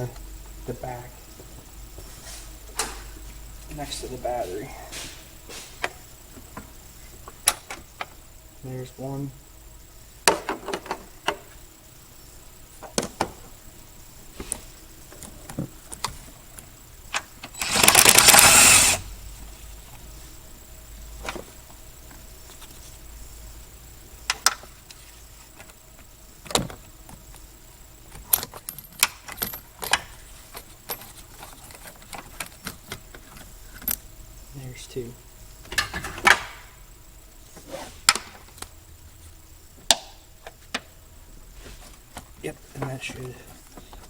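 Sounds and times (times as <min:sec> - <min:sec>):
loud rasping burst: 0:17.6 - 0:19.1
tools and metal parts clinking: 0:28.1 - 0:34.0.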